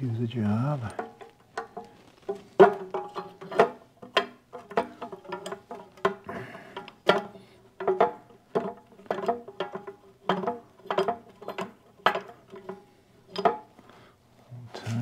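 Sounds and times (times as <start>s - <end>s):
metal clinks and knocks: 0.3s - 14.0s.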